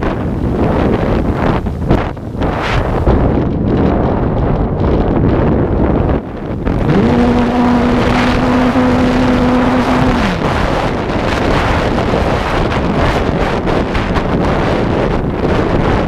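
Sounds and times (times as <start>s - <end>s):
wind buffeting microphone: 0.0s - 16.0s
low hum sliding in pitch: 6.2s - 11.8s.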